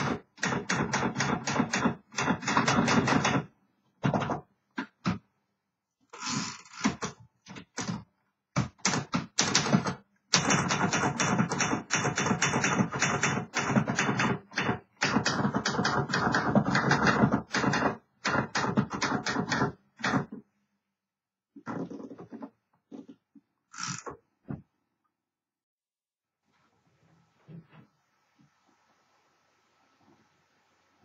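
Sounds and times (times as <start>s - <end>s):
manual typewriter typing: 0.0s - 3.4s, 8.6s - 20.3s.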